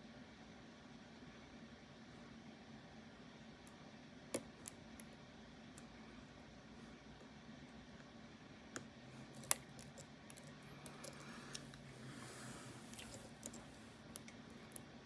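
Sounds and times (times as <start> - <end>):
lock-picking tools clicking: 9.3 - 11.8, 12.9 - 14.9.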